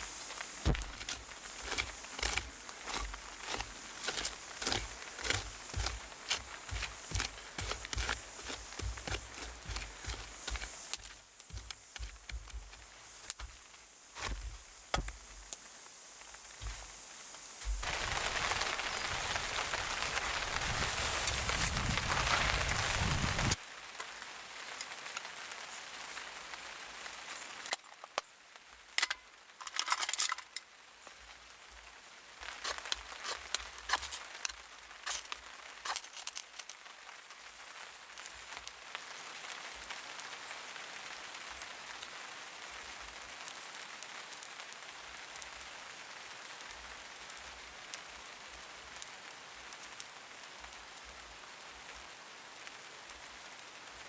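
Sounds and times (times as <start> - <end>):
fire popping: 0.0 - 23.6
wood fire crackling: 0.0 - 25.3, 31.7 - 39.9
soft hiss: 0.0 - 29.6.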